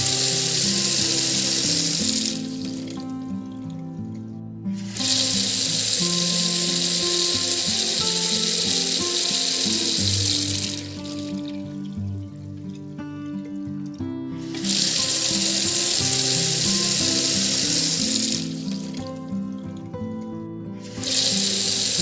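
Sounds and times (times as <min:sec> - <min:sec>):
faucet running: 0:00.0 - 0:04.1, 0:04.8 - 0:19.4, 0:20.9 - 0:22.0.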